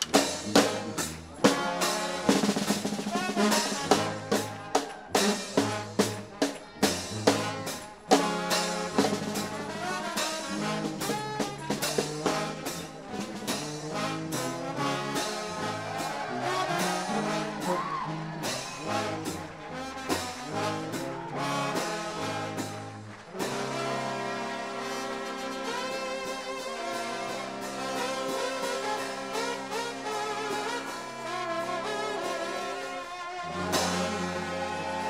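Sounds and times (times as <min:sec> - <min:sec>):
bass line: 0:00.0 - 0:24.9
drum kit: 0:00.0 - 0:35.0
trombone band playing: 0:00.0 - 0:35.0.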